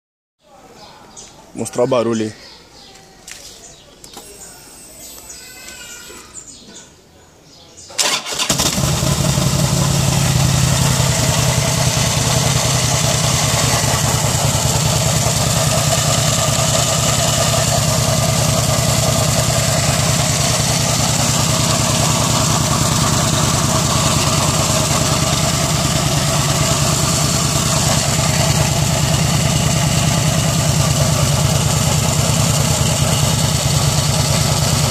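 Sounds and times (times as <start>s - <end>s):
motorcycle engine idling: 8.3s - 34.9s.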